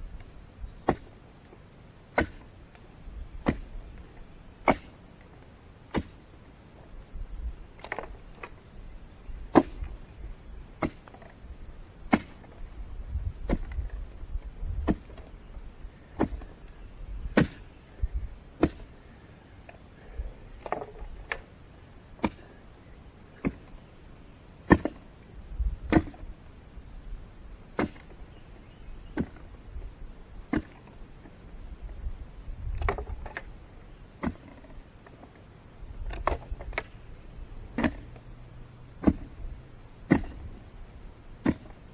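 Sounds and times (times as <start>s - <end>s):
dirt and stones scraping: 0.0s - 23.9s, 27.2s - 41.9s
digging tool striking ground: 0.8s - 1.2s, 2.1s - 2.5s, 3.4s - 3.9s, 4.6s - 5.0s, 5.9s - 6.2s, 9.5s - 9.9s, 10.8s - 11.3s, 12.0s - 12.6s, 13.4s - 14.0s, 14.8s - 15.3s, 16.2s - 16.6s, 17.4s - 17.6s, 18.6s - 18.9s, 22.2s - 22.6s, 23.4s - 23.7s, 24.7s - 25.0s, 25.9s - 26.2s, 27.8s - 28.2s, 29.2s - 29.4s, 30.5s - 30.9s, 34.2s - 34.7s, 37.7s - 38.2s, 39.0s - 39.4s, 40.0s - 40.5s, 41.4s - 41.8s.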